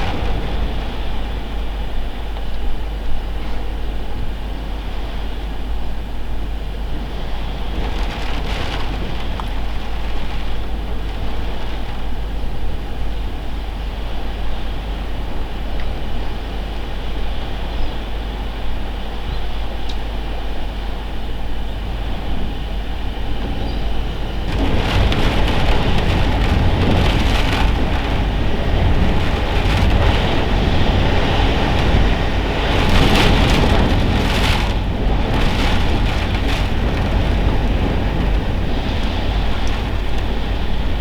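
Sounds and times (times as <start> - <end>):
storm wind gusting: 0.0 - 3.3, 6.5 - 13.1, 21.5 - 41.0
wind buffeting microphone: 0.0 - 41.0.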